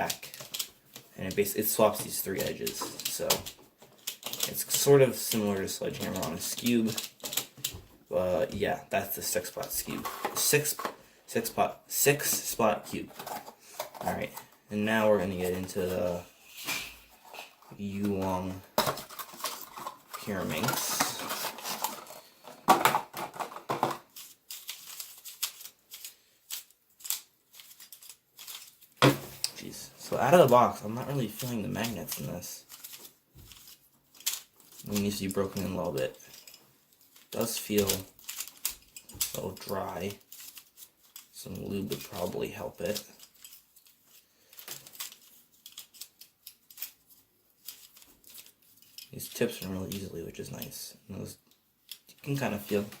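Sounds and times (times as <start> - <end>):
puzzle cube plastic clicks: 0.0 - 7.8, 18.0 - 29.6, 31.3 - 50.8
plastic puzzle cube clicking: 37.2 - 41.4.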